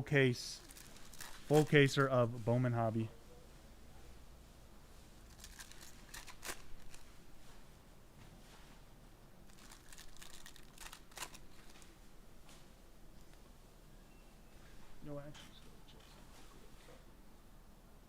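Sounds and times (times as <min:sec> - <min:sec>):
foil wrappers crinkling and tearing: 0:00.6 - 0:02.1, 0:05.3 - 0:07.1, 0:09.5 - 0:11.8.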